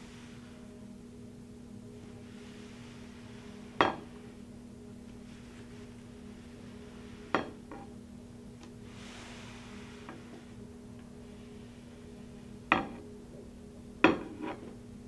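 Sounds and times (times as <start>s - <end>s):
steady low hum: 0.0s - 15.0s
tableware clinking on hard surface: 3.8s - 4.1s, 12.7s - 13.0s, 14.0s - 14.8s.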